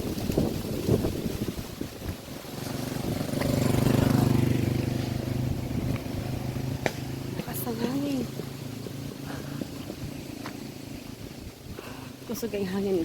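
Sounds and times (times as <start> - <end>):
wind buffeting microphone: 0.0 - 13.0
vehicle engine passing: 2.3 - 11.6.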